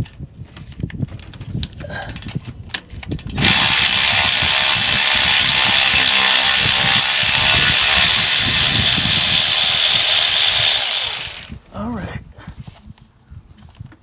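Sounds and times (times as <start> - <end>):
power wrench running: 3.1 - 11.6.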